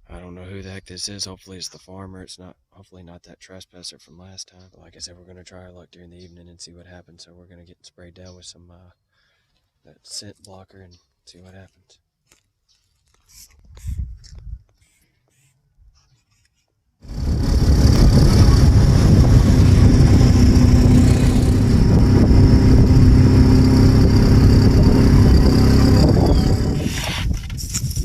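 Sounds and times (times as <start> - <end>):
vehicle engine running loudly: 17.1 - 27.2.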